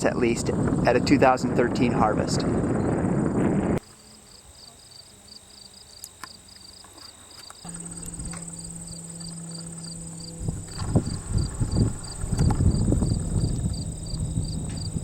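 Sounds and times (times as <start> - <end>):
insects chirping: 0.0 - 15.0
steady high whine: 0.0 - 15.0
low steady hum: 5.5 - 15.0.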